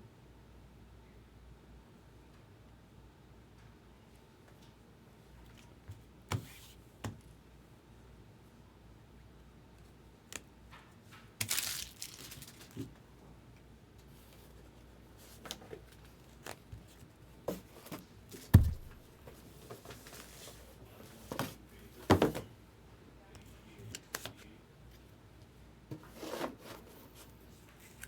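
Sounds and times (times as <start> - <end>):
wrapper tearing rustle: 11.4 - 12.9
dull thump: 18.5 - 19.1.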